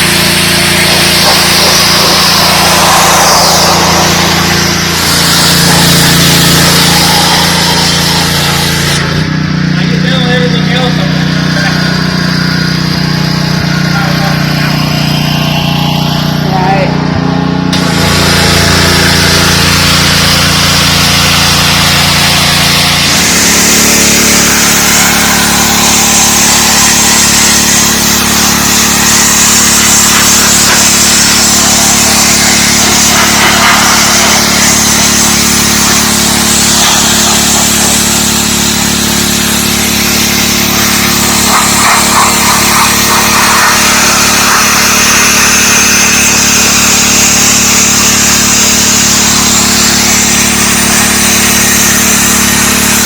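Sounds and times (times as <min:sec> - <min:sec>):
water jet hissing on concrete: 0:00.0 - 0:16.6, 0:17.7 - 0:53.0
pressure washer engine droning: 0:00.0 - 0:53.0.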